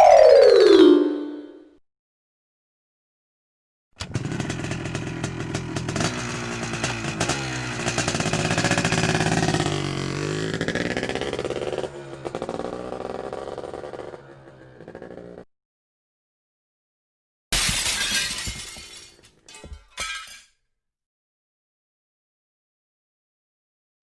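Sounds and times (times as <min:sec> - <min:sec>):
engine revving: 0:04.0 - 0:15.4.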